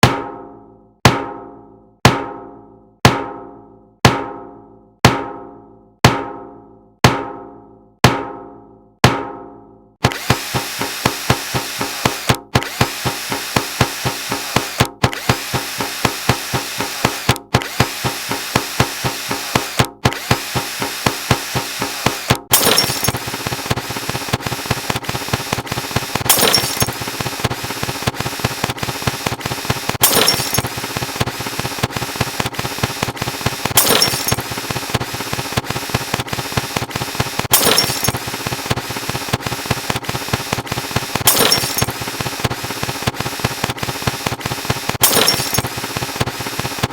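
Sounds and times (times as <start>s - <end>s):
rhythmic mechanical clatter: 10.0s - 46.9s.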